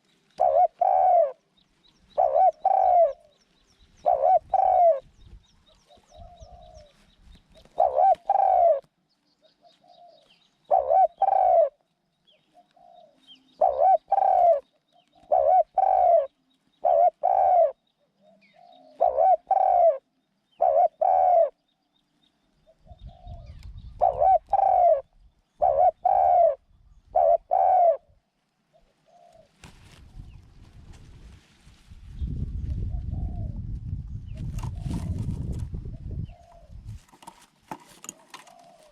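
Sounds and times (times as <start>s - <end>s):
dove cooing: 0.0s - 3.4s, 4.0s - 11.8s, 12.5s - 21.6s, 22.7s - 29.7s, 32.8s - 33.6s, 34.4s - 36.9s, 38.0s - 38.9s.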